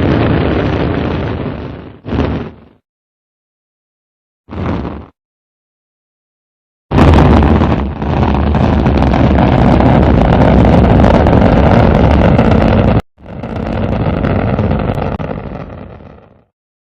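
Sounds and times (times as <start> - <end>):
rocket engine rushing rumble: 0.0 - 2.8, 4.5 - 5.2, 6.9 - 16.5.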